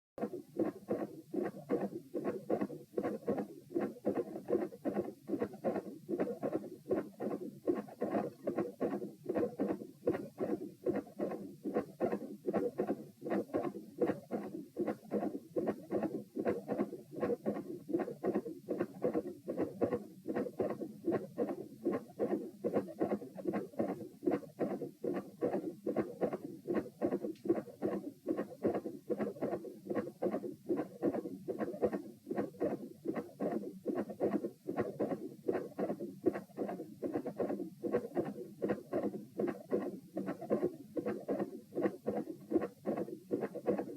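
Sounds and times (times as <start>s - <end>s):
heartbeat thumping: 0.2s - 43.9s.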